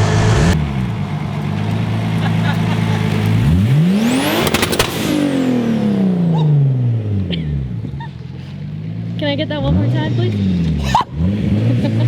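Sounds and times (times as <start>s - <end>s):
car engine revving: 0.0s - 12.0s
exhaust pops: 0.5s - 6.6s.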